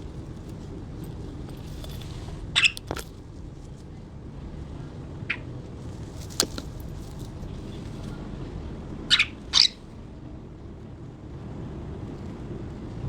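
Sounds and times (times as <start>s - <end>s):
low steady background hum: 0.0s - 13.0s
budgerigar chirps: 2.6s - 2.9s, 5.3s - 5.5s, 9.1s - 9.9s.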